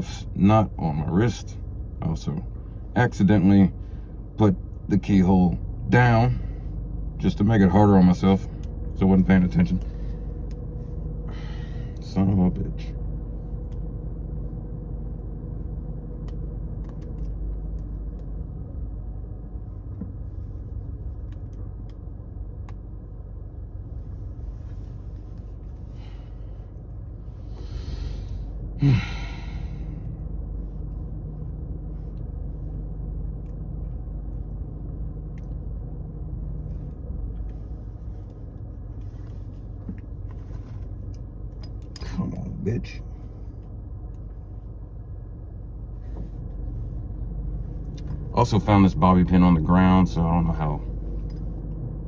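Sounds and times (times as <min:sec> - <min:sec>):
steady low rumble: 0:00.0 - 0:52.0
loud breath: 0:11.3 - 0:12.0, 0:27.4 - 0:30.0
person grunting: 0:28.8 - 0:29.5.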